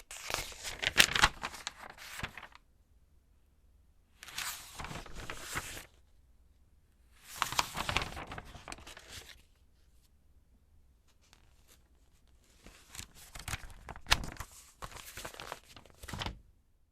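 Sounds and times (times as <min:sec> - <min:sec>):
faint paper crackles: 0:00.0 - 0:02.6, 0:04.2 - 0:06.0, 0:07.2 - 0:10.1, 0:11.1 - 0:16.4
magazine pages turning: 0:00.1 - 0:02.6, 0:04.2 - 0:06.0, 0:07.2 - 0:09.6, 0:11.2 - 0:16.4.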